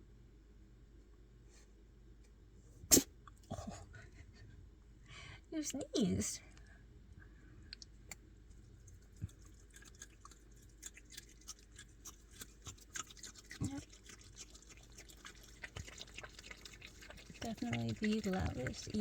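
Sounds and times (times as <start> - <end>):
animal chewing wetly: 7.8 - 19.0.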